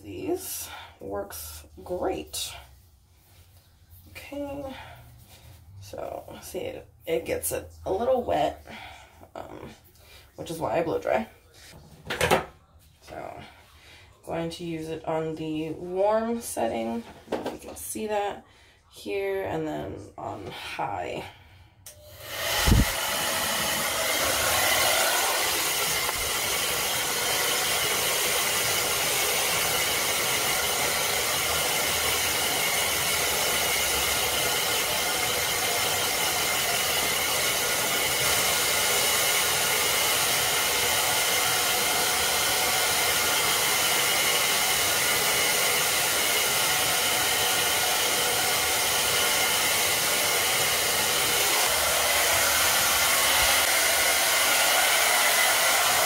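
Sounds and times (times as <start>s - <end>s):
blow-dryer blowing: 21.9s - 56.0s.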